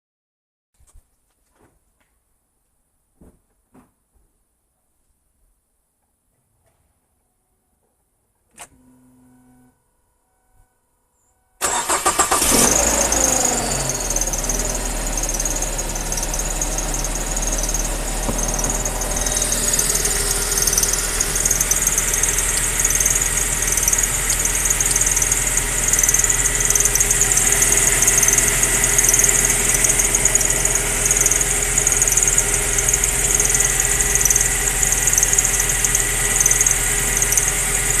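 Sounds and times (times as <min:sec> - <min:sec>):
car engine cranking and starting: 0:11.6 - 0:38.0
drive belt squealing: 0:11.6 - 0:38.0
engine idling: 0:11.6 - 0:38.0.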